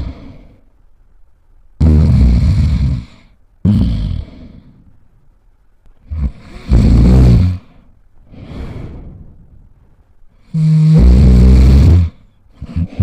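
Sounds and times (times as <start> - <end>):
person snoring: 0.0 - 0.6, 1.8 - 4.8, 6.0 - 9.2, 10.4 - 13.0
breathy breath: 7.6 - 10.9.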